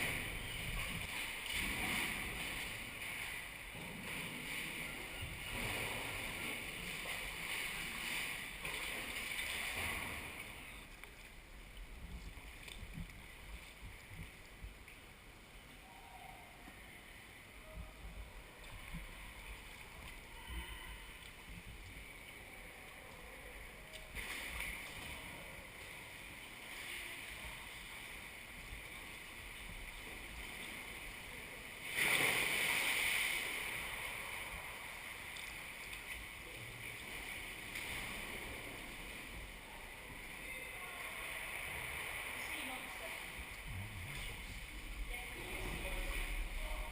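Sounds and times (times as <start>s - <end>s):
surge of water: 0.0s - 14.6s, 18.2s - 46.9s
water washing around kayak: 0.0s - 14.8s, 18.1s - 46.9s
small water splashes: 0.0s - 15.0s, 18.5s - 46.9s.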